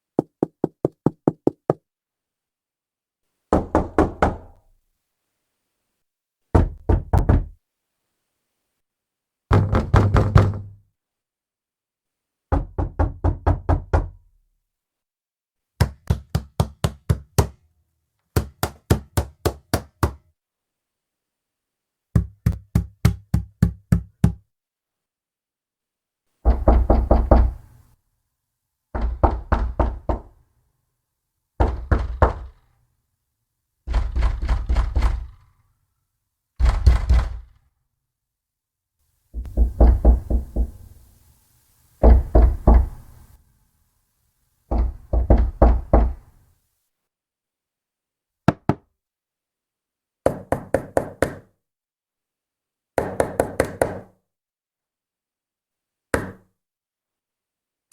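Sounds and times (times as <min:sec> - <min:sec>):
fist knocking on wooden door: 0:03.5 - 0:04.5, 0:06.5 - 0:07.6, 0:09.5 - 0:10.8, 0:12.5 - 0:14.2, 0:26.5 - 0:27.6, 0:28.9 - 0:30.3, 0:31.6 - 0:32.6, 0:36.6 - 0:37.5, 0:39.4 - 0:40.9, 0:42.0 - 0:43.0, 0:44.7 - 0:46.2.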